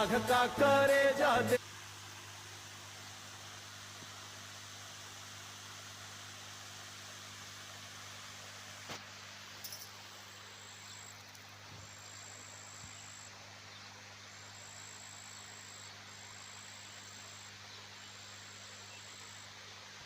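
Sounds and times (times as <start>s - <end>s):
steady hiss and low hum: 0.0s - 20.0s
high-pitched insect trilling: 9.6s - 10.0s.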